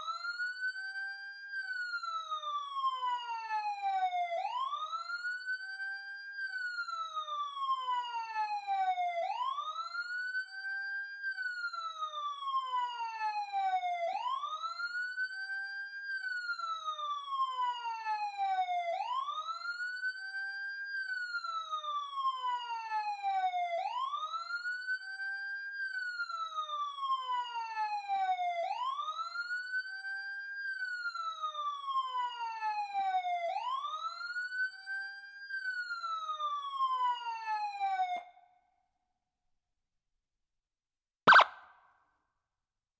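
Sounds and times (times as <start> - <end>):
police siren wailing: 1.9 - 5.8, 6.8 - 10.5, 11.3 - 34.8, 35.5 - 38.3, 41.3 - 41.7.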